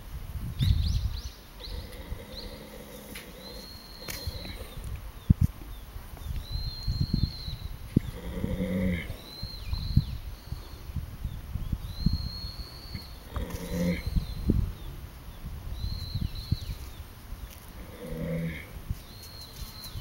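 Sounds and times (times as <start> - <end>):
horse snoring: 1.6 - 4.9, 8.0 - 9.2, 13.2 - 14.4, 17.8 - 18.8.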